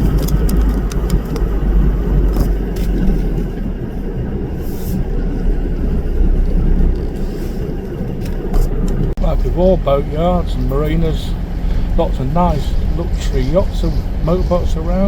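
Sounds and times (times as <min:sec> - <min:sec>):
light clicks and rattles: 0:00.0 - 0:03.7
car engine and road noise: 0:00.0 - 0:15.0.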